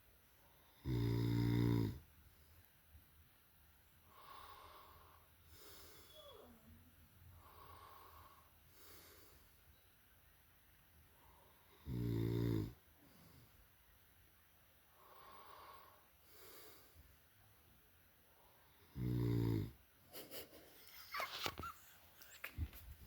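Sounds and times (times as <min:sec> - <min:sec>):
man snoring loudly: 0:00.7 - 0:02.0, 0:11.8 - 0:12.8, 0:18.9 - 0:19.8.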